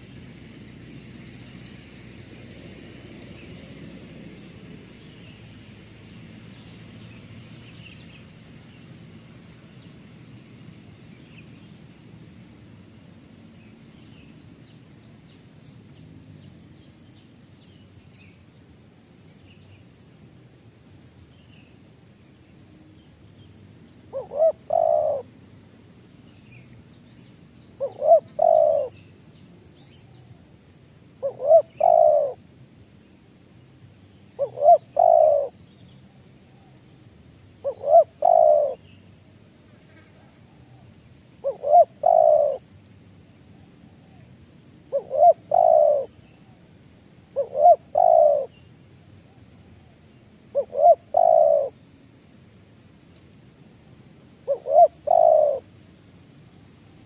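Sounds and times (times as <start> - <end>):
small birds chirping: 13.5 - 20.4, 21.2 - 30.5, 31.2 - 32.4, 33.0 - 52.0, 54.3 - 57.0
bird cooing: 24.1 - 25.3, 27.8 - 29.0, 31.2 - 32.4, 34.3 - 35.6, 37.6 - 38.9, 40.2 - 42.7, 44.9 - 46.6, 47.3 - 48.6, 49.3 - 51.8, 54.4 - 55.7.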